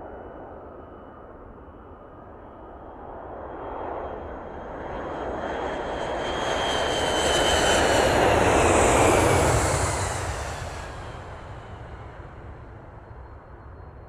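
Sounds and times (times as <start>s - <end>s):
jet airplane passing: 4.6s - 14.0s.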